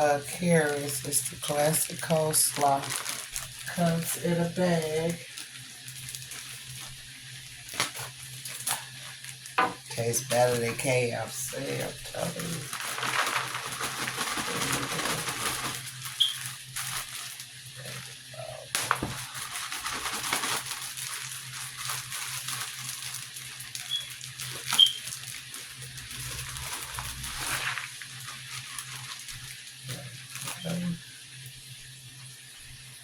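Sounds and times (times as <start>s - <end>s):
kitchen clicks and knocks: 9.6s - 9.9s.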